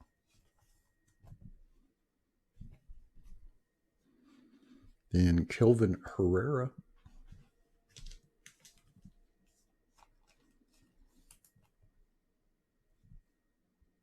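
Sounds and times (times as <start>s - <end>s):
trading cards clicking and rustling: 7.3s - 9.2s, 9.9s - 11.8s.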